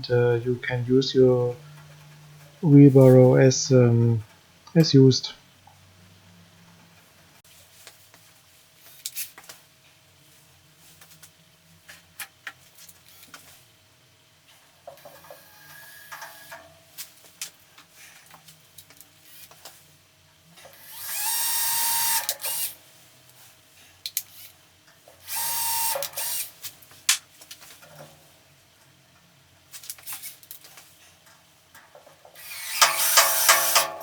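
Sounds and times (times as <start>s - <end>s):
power drill whining: 20.8s - 22.8s, 25.2s - 26.5s, 32.4s - 34.0s.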